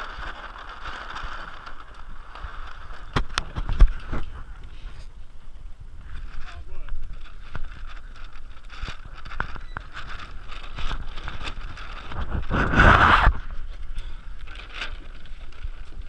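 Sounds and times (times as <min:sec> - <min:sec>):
wind buffeting microphone: 0:00.0 - 0:16.0
loud rushing noise: 0:12.2 - 0:13.4.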